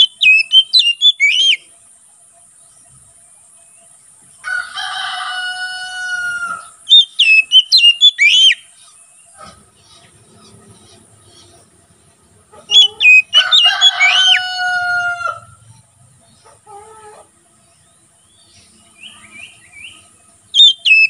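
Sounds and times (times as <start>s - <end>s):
bird whistling song: 0.0s - 1.7s, 6.5s - 11.6s, 12.6s - 14.6s, 18.2s - 21.0s
rooster crowing: 4.4s - 6.8s, 12.5s - 15.8s, 16.6s - 17.3s.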